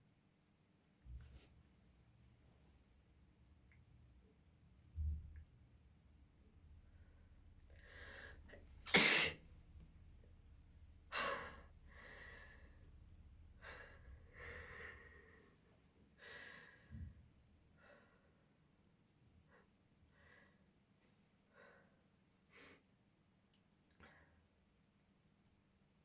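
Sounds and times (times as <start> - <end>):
person sneezing: 8.9 - 9.4.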